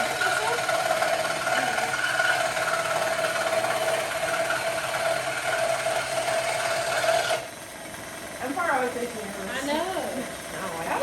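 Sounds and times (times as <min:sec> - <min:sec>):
scroll saw cutting wood: 0:00.0 - 0:07.5.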